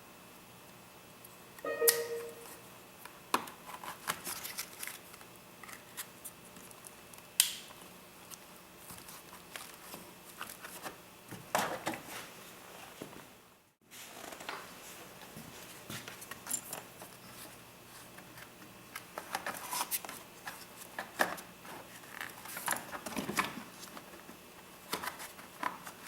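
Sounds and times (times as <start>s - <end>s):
sharp snap: 7.4s - 7.7s.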